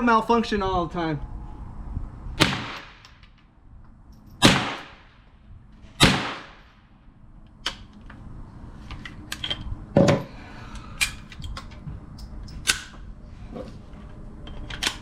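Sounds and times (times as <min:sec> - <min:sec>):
gunshots: 0:02.4 - 0:03.1, 0:04.4 - 0:05.2, 0:06.0 - 0:06.7
metallic clicks of gun handling: 0:08.9 - 0:09.7, 0:10.7 - 0:13.0, 0:14.4 - 0:15.0.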